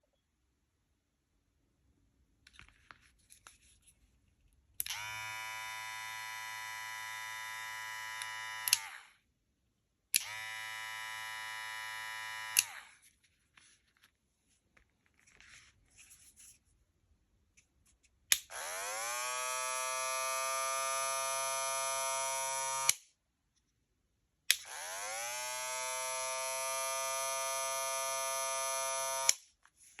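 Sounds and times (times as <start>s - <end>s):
hair clippers buzzing: 4.8s - 9.2s, 10.2s - 13.0s, 18.4s - 23.0s, 24.5s - 29.4s.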